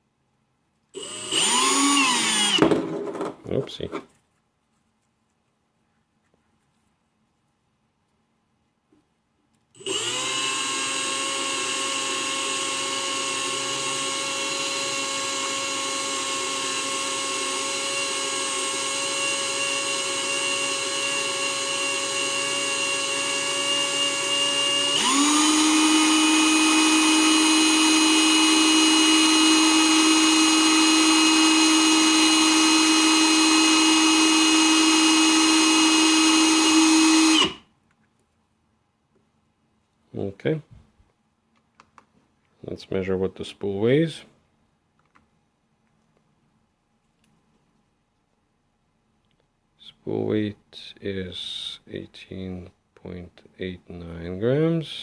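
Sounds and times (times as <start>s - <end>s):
power drill motor running: 1.0s - 2.9s, 9.8s - 37.6s.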